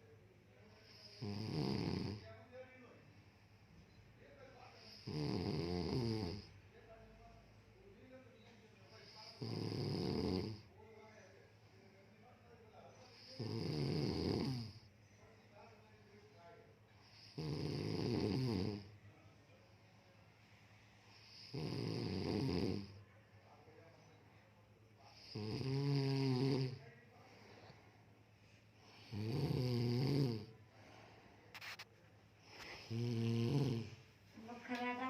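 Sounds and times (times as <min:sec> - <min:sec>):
quiet breathing: 0:00.0 - 0:13.8, 0:14.4 - 0:21.8, 0:22.4 - 0:35.0
person snoring heavily: 0:01.2 - 0:02.2, 0:05.0 - 0:06.4, 0:29.0 - 0:30.5.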